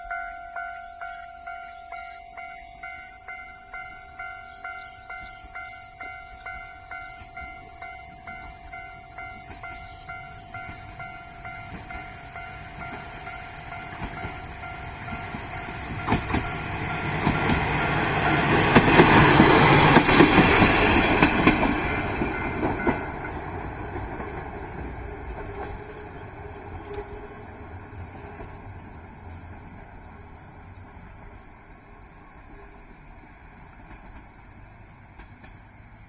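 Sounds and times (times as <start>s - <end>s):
crossing warning bell ringing: 0.0s - 26.4s
diesel railcar rumble: 0.0s - 36.0s
wheels clicking over rail joints: 0.6s - 29.8s.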